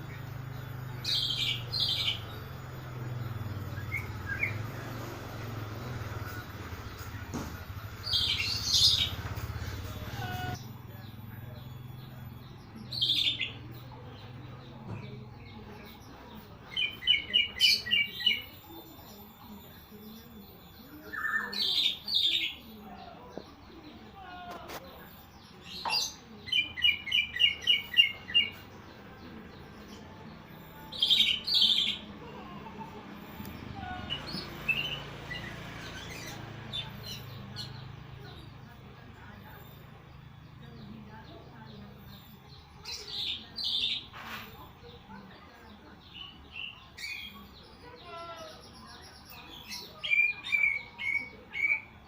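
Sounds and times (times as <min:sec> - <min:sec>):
bird harsh calls and chirps: 0:00.0 - 0:19.2, 0:30.6 - 0:52.0.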